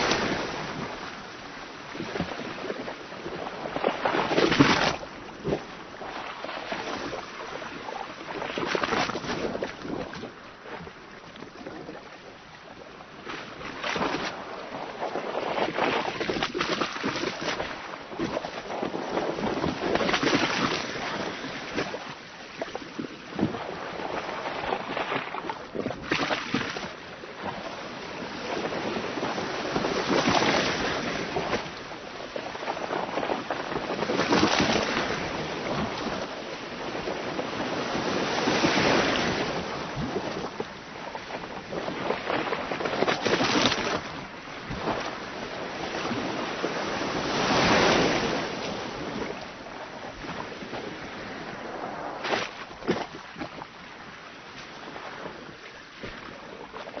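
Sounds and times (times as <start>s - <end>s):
sea waves splashing on boat hull: 0.0s - 57.0s.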